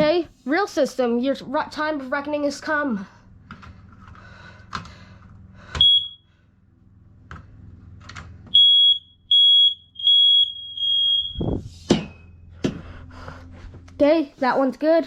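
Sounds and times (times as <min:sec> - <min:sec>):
smoke alarm click: 0:05.8 - 0:06.2, 0:08.5 - 0:11.5
smoke alarm beeping: 0:05.8 - 0:06.3, 0:08.5 - 0:12.5.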